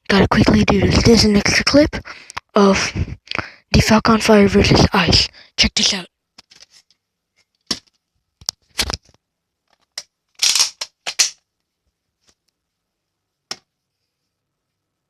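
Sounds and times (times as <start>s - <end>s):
toy blaster clicks and snaps: 9.9s - 11.4s.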